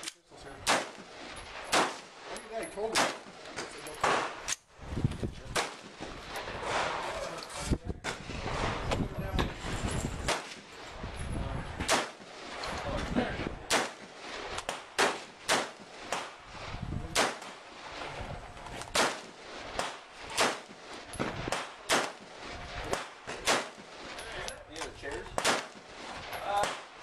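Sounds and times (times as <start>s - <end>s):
gunshots cracking: 0.6s - 4.5s, 5.5s - 7.1s, 10.2s - 10.7s, 11.8s - 12.6s, 13.6s - 17.7s, 18.8s - 24.2s, 25.3s - 27.0s.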